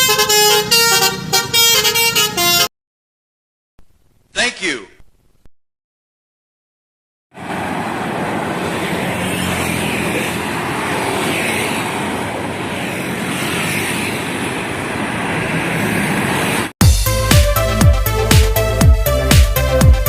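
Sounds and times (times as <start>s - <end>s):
heavy vehicle rushing noise: 7.3s - 17.8s.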